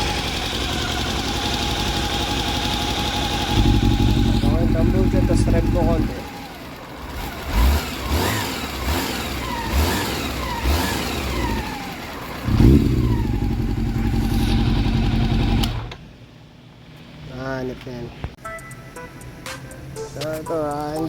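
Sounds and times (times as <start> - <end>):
engine ticking: 0.0 - 16.0
motorcycle engine revving: 0.0 - 16.0.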